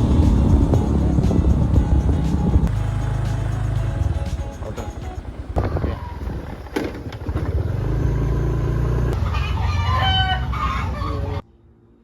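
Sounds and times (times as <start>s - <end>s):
low engine rumble: 0.0s - 11.6s
rooster crowing: 9.3s - 11.4s.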